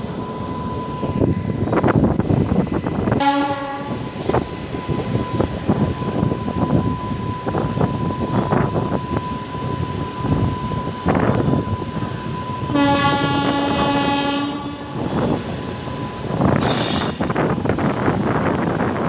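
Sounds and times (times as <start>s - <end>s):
train rumble and wheel clatter: 0.0s - 19.0s
locomotive horn: 3.2s - 4.0s, 12.7s - 15.3s.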